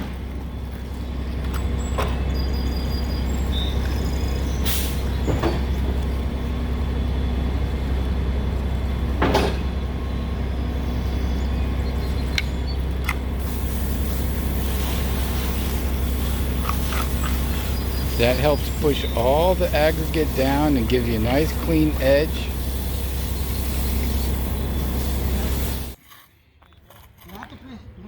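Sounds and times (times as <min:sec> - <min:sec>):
large engine idling: 0:00.0 - 0:26.0.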